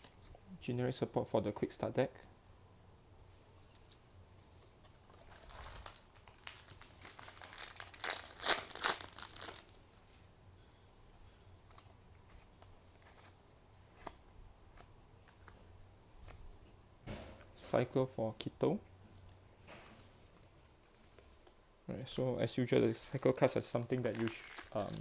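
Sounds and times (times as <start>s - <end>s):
foil wrapper crinkling and tearing: 5.2s - 9.8s, 23.1s - 25.0s.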